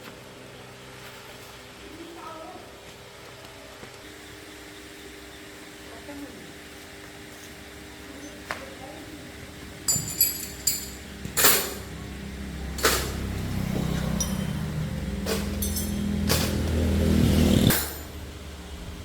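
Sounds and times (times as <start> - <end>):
sharp metallic clinks: 9.9 - 11.9, 14.0 - 16.6
motorcycle engine running: 10.8 - 19.0.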